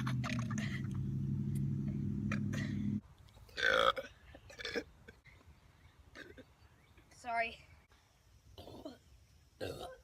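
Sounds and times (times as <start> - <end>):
girl burping: 3.6 - 4.9, 9.6 - 10.0.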